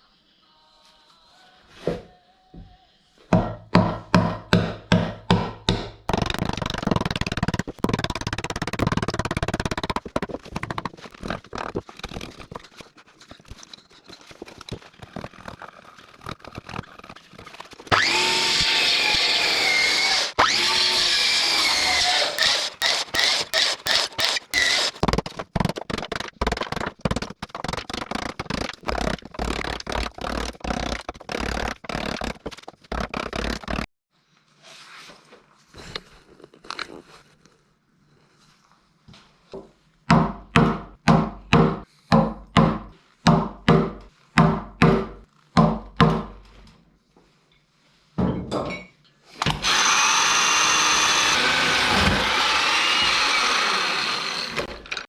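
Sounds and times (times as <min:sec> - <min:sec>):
sharp wooden knocks: 0:03.4 - 0:11.4, 0:19.8 - 0:32.3
power tool running: 0:06.1 - 0:09.9, 0:17.9 - 0:25.1, 0:49.4 - 0:55.0.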